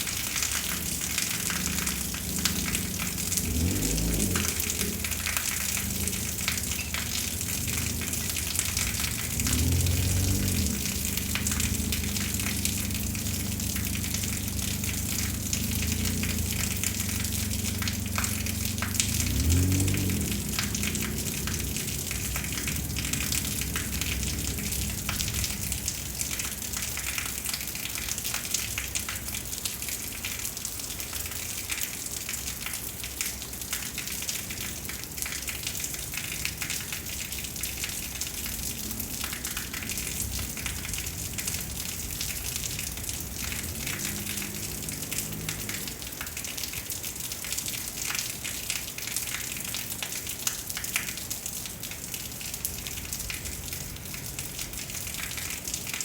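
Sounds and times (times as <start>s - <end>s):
heavy rain hissing: 0.0s - 29.3s, 34.4s - 46.7s
raindrops hitting close: 0.0s - 56.0s.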